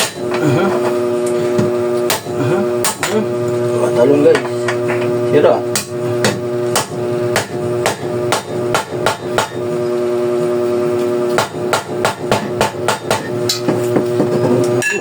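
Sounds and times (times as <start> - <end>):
hammer striking metal cup: 0.0 - 0.4, 2.1 - 3.2, 5.7 - 9.6, 11.4 - 14.0, 14.8 - 15.0.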